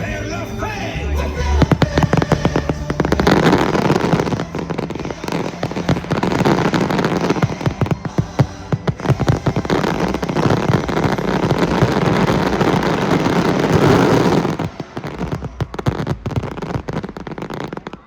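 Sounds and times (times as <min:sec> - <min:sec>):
fireworks crackling and banging: 0:01.5 - 0:18.0.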